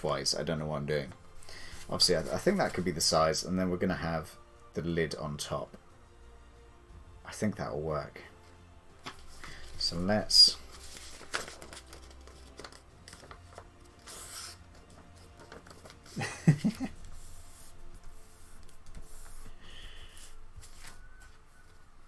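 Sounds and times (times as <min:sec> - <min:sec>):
faint background music: 0:00.0 - 0:22.0
paper and foam rustling: 0:01.1 - 0:03.2, 0:09.0 - 0:22.0.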